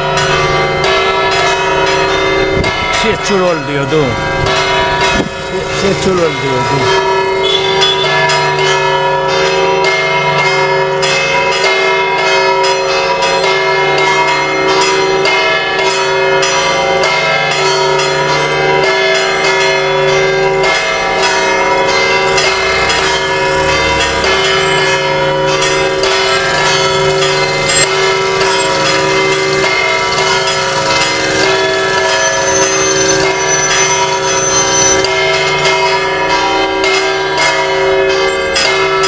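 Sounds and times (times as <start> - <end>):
church bells ringing: 0.0 - 39.0.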